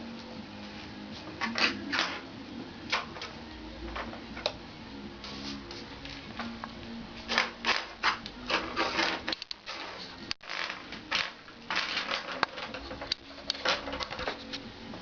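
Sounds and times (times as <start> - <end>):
kitten scuffling with a pen: 5.2 - 6.2.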